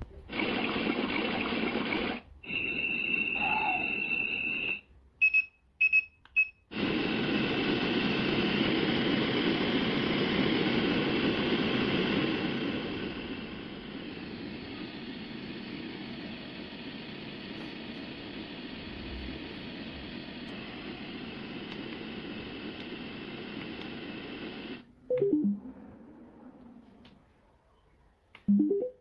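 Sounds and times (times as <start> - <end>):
steady electronic beep tone: 0.6 - 6.0.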